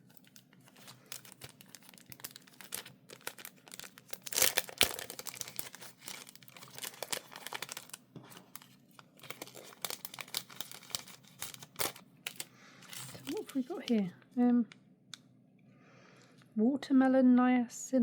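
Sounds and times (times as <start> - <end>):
packaging tearing: 0.0 - 14.0
packaging crinkling: 0.0 - 14.1.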